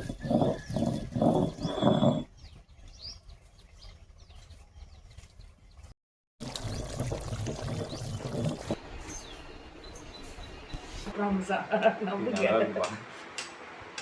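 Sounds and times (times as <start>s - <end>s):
small birds chirping: 0.0s - 11.1s.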